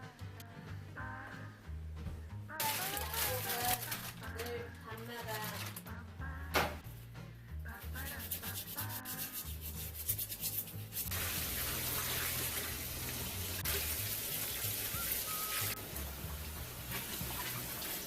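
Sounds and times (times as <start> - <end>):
soft background music: 0.0 - 18.0
quick rubbing strokes: 7.8 - 11.1
water tap running: 9.9 - 18.0.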